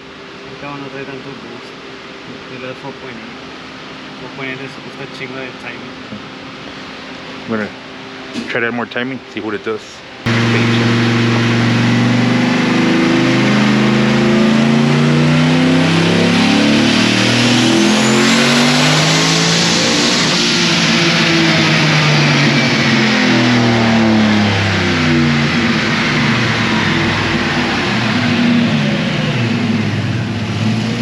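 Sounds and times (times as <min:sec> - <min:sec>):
engine revving at full throttle: 0:10.2 - 0:31.0.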